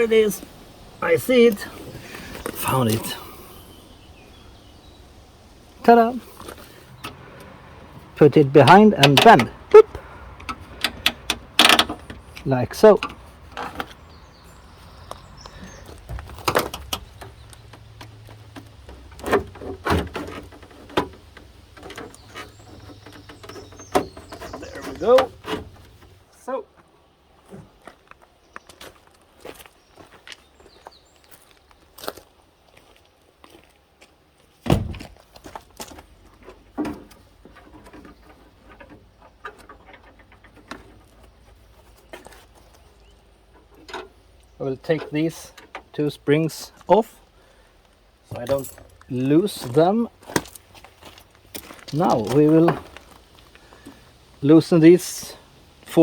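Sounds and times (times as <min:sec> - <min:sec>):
metal clicks of door latch: 0:10.4 - 0:12.2
heavy thump: 0:16.0 - 0:17.0, 0:34.7 - 0:35.2.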